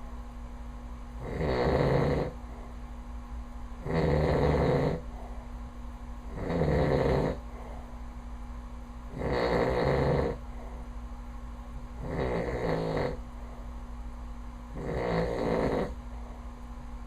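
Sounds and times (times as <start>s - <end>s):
man snoring loudly: 1.2s - 2.4s, 3.8s - 5.0s, 6.3s - 7.4s, 9.1s - 10.4s, 12.0s - 13.2s, 14.8s - 16.0s.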